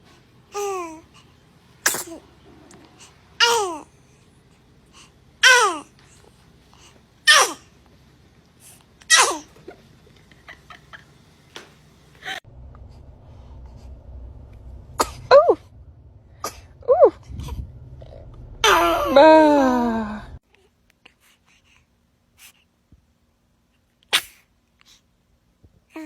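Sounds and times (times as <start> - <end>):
baby sneezing: 1.8 - 2.3, 7.3 - 7.7, 9.1 - 9.5, 24.1 - 24.5.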